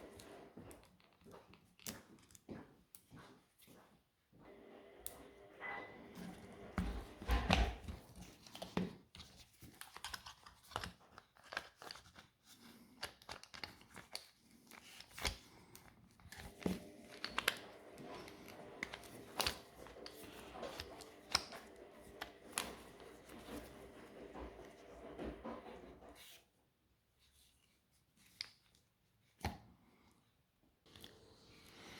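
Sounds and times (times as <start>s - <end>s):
plastic parts clicking and rustling: 6.8s - 26.4s.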